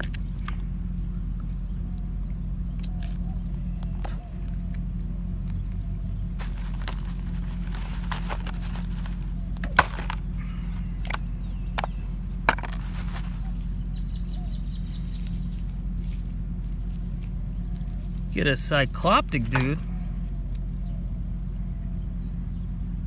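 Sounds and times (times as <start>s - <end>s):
steady low hum: 0.0s - 23.0s
brief rustling: 6.3s - 13.8s
plastic clicks: 6.4s - 10.3s, 11.0s - 13.4s.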